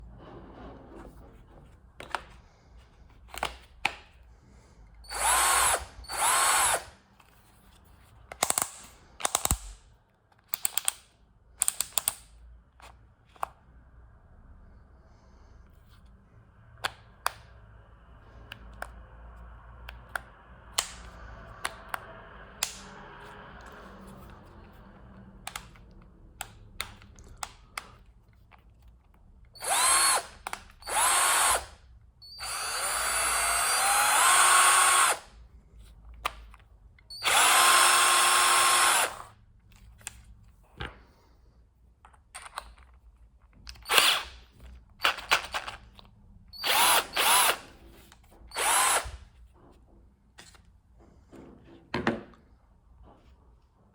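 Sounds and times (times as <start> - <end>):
cordless drill motor whining: 5.1 - 7.0, 29.6 - 35.3, 37.1 - 39.3, 46.5 - 47.8, 48.5 - 49.3.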